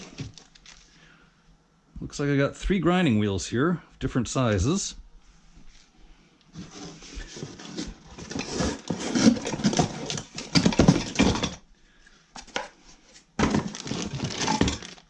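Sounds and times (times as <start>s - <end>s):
packaging rustling: 0.0s - 1.0s, 6.6s - 11.6s, 13.4s - 15.0s
parts knocking in cardboard box: 8.2s - 11.6s, 13.4s - 15.0s.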